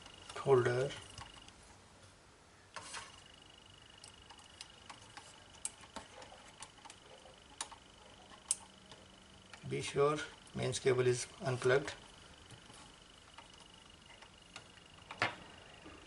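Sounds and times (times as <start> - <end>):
faint high whine: 2.4 - 16.0
small clicks and taps of parts: 4.0 - 9.7.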